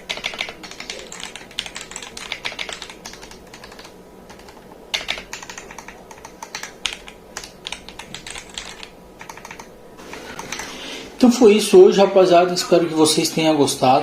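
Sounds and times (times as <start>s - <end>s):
mechanical keyboard typing: 0.0s - 9.7s, 10.3s - 10.7s.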